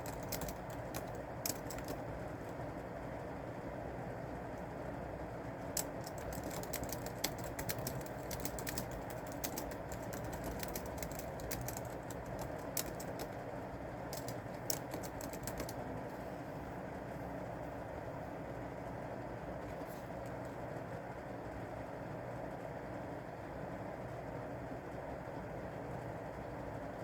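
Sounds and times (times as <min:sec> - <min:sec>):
keyboard key clicks: 0:00.0 - 0:02.0, 0:05.8 - 0:13.4, 0:14.1 - 0:15.8
low background noise: 0:00.0 - 0:27.0.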